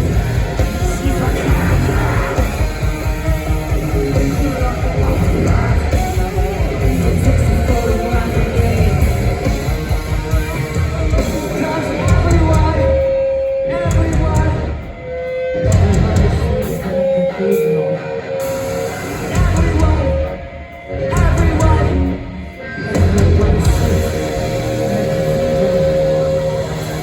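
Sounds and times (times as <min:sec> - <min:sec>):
rock band noise jam: 0:00.0 - 0:27.0
steady high guitar note: 0:23.7 - 0:27.0.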